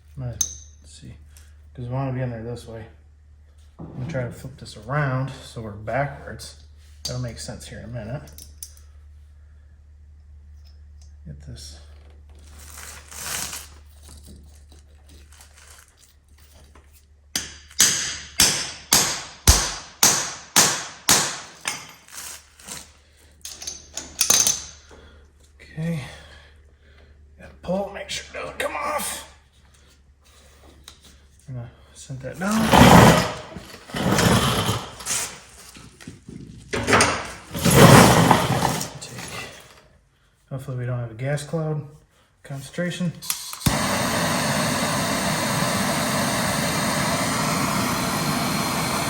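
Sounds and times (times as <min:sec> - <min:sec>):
gas torch flame hissing: 0:32.4 - 0:35.5, 0:36.8 - 0:39.7, 0:43.2 - 0:49.0.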